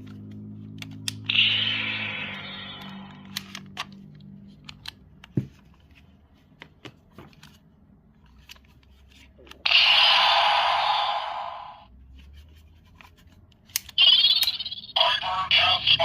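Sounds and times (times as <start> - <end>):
plastic toy clicks and snaps: 2.8 - 4.0, 13.6 - 14.5.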